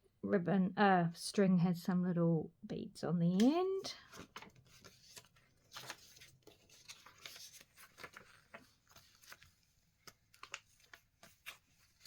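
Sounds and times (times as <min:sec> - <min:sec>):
paper pages rustling: 0:03.4 - 0:12.0.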